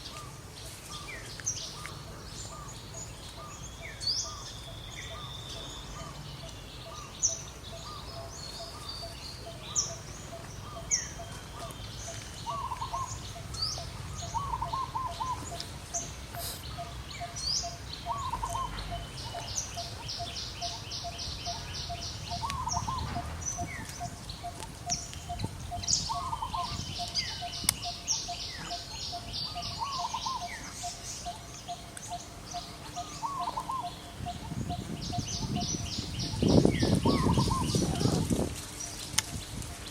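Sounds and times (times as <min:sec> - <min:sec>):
birds chirping: 0:00.0 - 0:39.9
bird trills: 0:01.0 - 0:38.2.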